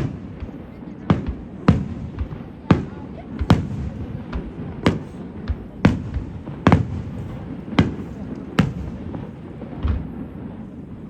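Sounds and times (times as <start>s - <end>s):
fireworks bursting: 0.0s - 11.0s.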